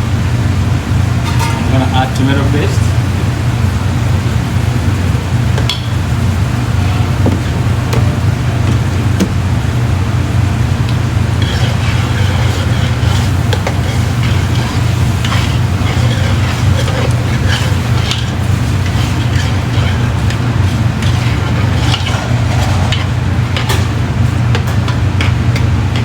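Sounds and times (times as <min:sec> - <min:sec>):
low steady hum: 0:00.0 - 0:26.0
onions sizzling in a pan: 0:00.0 - 0:26.0
utensil scraping a pan: 0:10.7 - 0:26.0.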